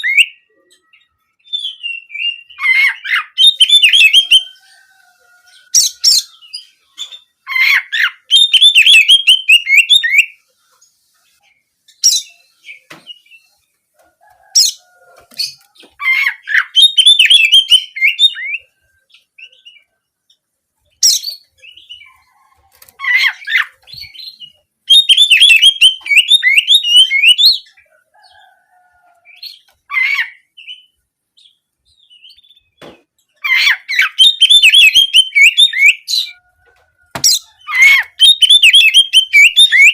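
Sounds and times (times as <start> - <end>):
bird singing trilled notes: 15.4 - 22.2, 23.0 - 27.8, 29.3 - 36.4, 37.3 - 39.9.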